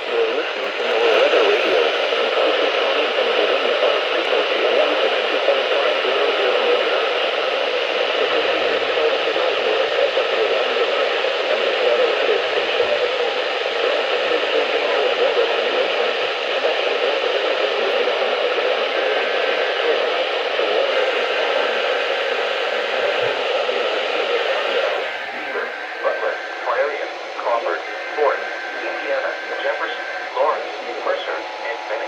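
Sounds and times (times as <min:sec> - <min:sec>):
radio static hiss: 0:00.0 - 0:32.0.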